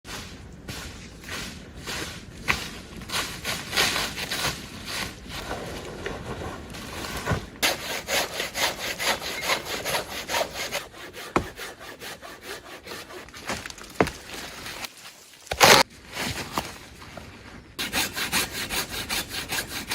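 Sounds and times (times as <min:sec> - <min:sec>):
hand saw cutting wood: 0:07.2 - 0:14.8, 0:15.5 - 0:15.8, 0:17.8 - 0:19.9.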